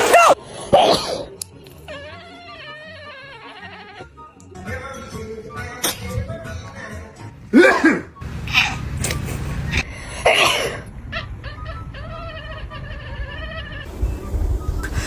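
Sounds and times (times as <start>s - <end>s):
person sneezing loudly: 0.0s - 1.3s, 7.6s - 9.6s.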